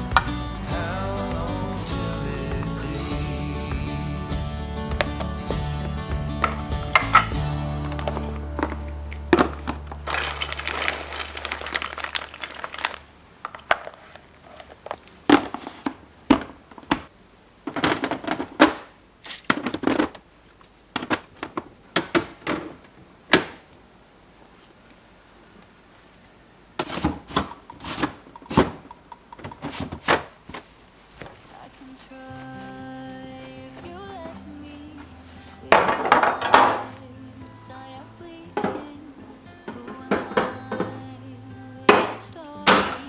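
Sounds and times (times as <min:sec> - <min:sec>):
background music: 0:00.0 - 0:12.2, 0:32.2 - 0:43.0
household knocks and clicks: 0:06.4 - 0:13.0, 0:26.8 - 0:30.3, 0:35.7 - 0:37.0, 0:38.6 - 0:39.0, 0:39.7 - 0:41.1, 0:41.9 - 0:43.0.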